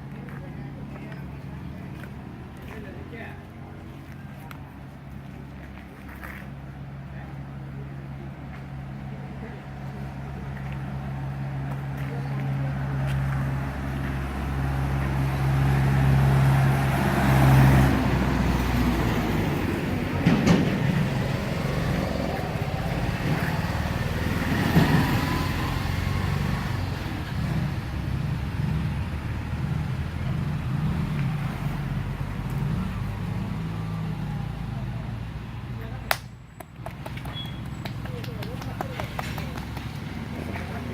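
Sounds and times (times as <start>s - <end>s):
traffic noise: 0.0s - 40.9s
vehicle engine running: 0.0s - 40.9s.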